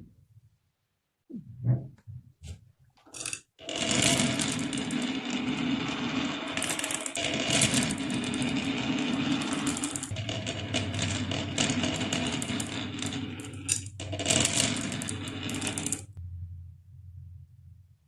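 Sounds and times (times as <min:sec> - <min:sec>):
marbles rattling down wooden run: 0:03.1 - 0:16.1.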